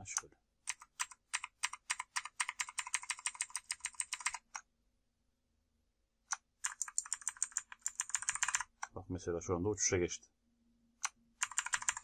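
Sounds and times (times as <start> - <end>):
mechanical keyboard clicking: 0.7 - 4.4, 6.3 - 8.7, 11.0 - 12.0.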